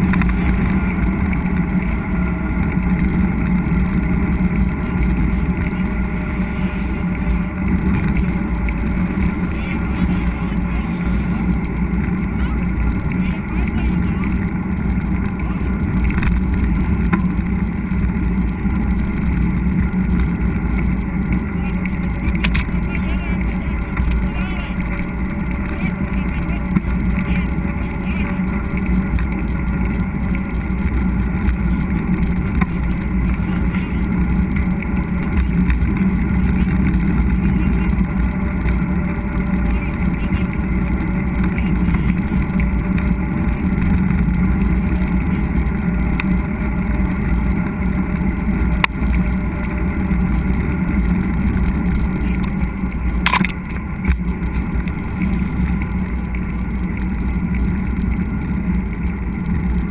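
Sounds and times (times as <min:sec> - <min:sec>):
bike tyre noise: 0:00.0 - 0:59.9
wind rumble: 0:00.0 - 0:59.9
sharp click: 0:53.3 - 0:53.6.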